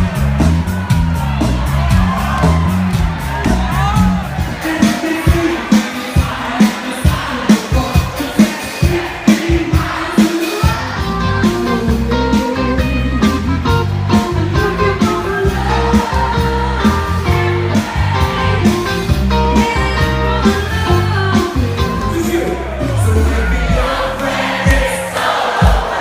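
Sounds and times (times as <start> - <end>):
drum beats: 0.0 - 26.0
live band playing: 0.0 - 26.0
person singing: 3.7 - 25.8.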